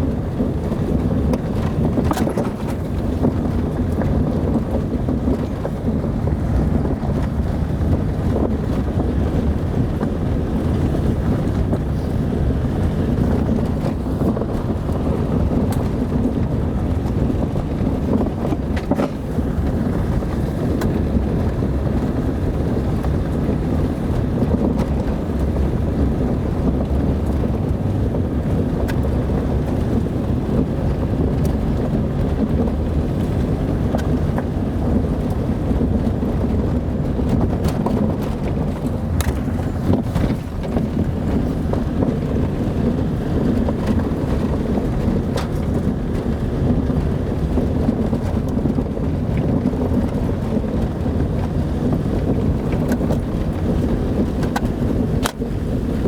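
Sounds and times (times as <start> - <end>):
car driving on dirt road: 0.0 - 56.0
wind noise: 0.0 - 56.0.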